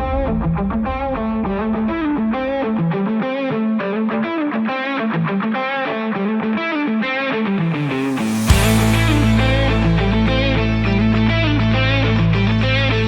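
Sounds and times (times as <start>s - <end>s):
distorted electric guitar run: 6.9s - 13.0s
full band playing: 7.8s - 11.0s.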